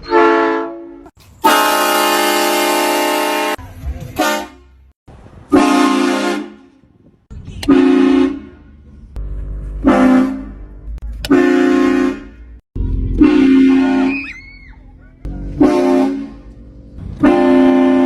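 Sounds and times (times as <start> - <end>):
train horn blasts: 0.0 - 3.6, 4.2 - 4.8, 5.5 - 6.8, 7.6 - 8.7, 9.8 - 10.6, 11.3 - 14.3, 15.4 - 18.0.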